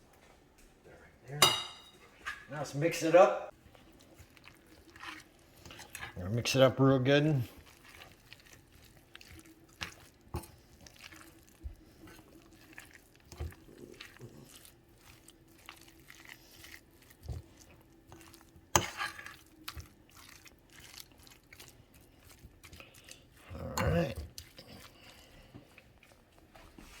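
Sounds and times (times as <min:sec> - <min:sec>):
wet squishing stirring: 0:01.4 - 0:27.0
spoon scraping a bowl: 0:04.2 - 0:06.2, 0:18.1 - 0:25.8.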